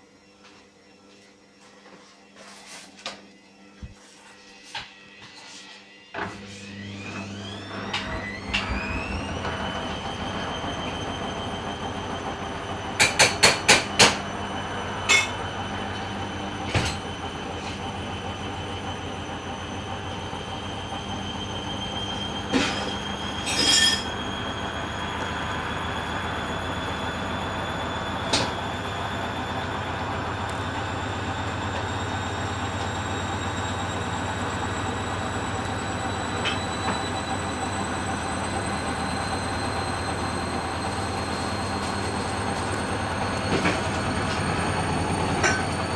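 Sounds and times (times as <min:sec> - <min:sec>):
washing machine motor whine: 0:00.0 - 0:45.9
washing drum knocking cabinet: 0:12.4 - 0:14.3.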